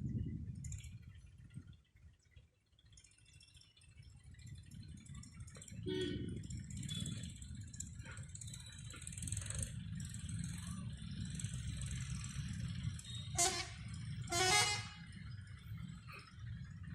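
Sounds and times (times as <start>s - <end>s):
diesel locomotive rumble: 0.0s - 16.9s
locomotive horn blasts: 13.1s - 15.2s.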